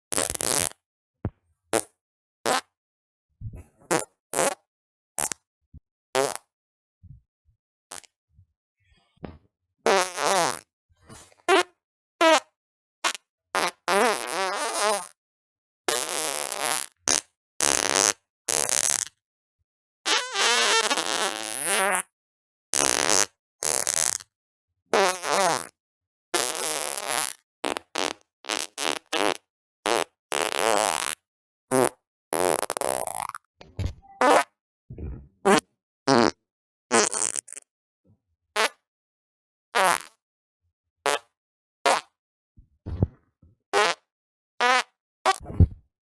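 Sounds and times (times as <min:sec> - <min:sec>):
farts: 0:00.1 - 0:00.8, 0:01.7 - 0:02.7, 0:03.9 - 0:04.6, 0:05.2 - 0:05.4, 0:06.2 - 0:06.5, 0:09.9 - 0:12.5, 0:13.1 - 0:15.2, 0:15.9 - 0:19.2, 0:20.1 - 0:22.1, 0:22.8 - 0:24.3, 0:26.4 - 0:37.7, 0:38.6 - 0:38.8, 0:39.8 - 0:40.2, 0:41.1 - 0:41.3, 0:41.9 - 0:42.1, 0:42.8 - 0:44.0, 0:44.6 - 0:45.8.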